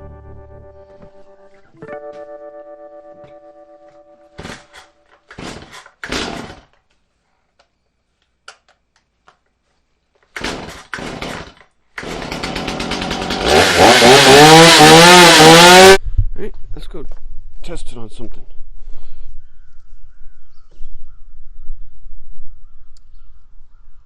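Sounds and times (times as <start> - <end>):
chainsaw engine revving: 4.4 - 6.8, 10.3 - 16.0
chainsaw starter cord pulls: 4.4 - 7.0, 10.2 - 16.0.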